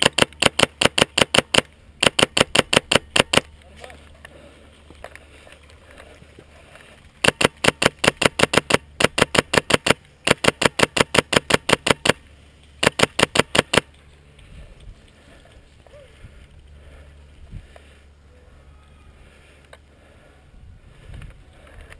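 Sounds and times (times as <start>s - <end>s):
airsoft rifle firing rapidly: 0.0s - 3.5s, 7.2s - 12.2s, 12.8s - 13.9s.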